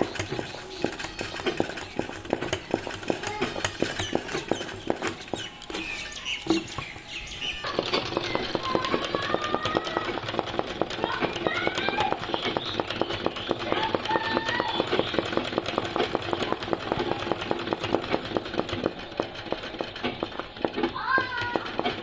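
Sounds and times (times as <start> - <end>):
sewing machine needle clicking: 7.7 - 22.0.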